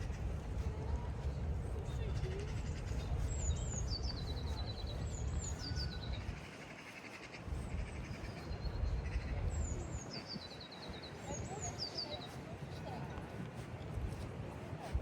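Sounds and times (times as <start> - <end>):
low city rumble: 0.0 - 15.0
songbird singing: 1.7 - 13.1.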